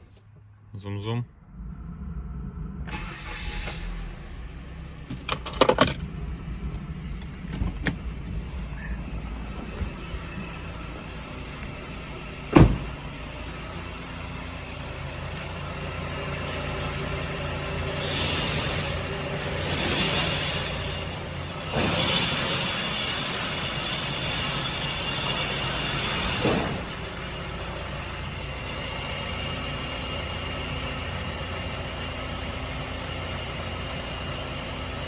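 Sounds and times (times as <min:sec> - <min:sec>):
car engine with bearing knock: 0:09.3 - 0:13.4
sharp thump: 0:12.5 - 0:13.1.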